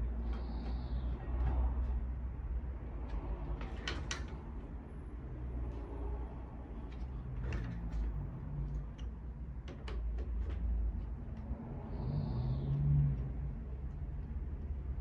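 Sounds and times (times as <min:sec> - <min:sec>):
sharp clicks and knocks: 0:06.9 - 0:11.6.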